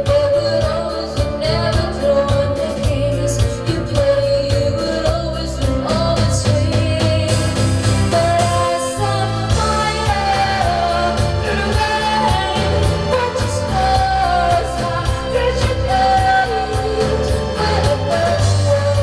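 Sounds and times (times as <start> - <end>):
pop backing track with bass and drums: 0.0 - 19.0
person singing long sliding notes: 8.1 - 19.0.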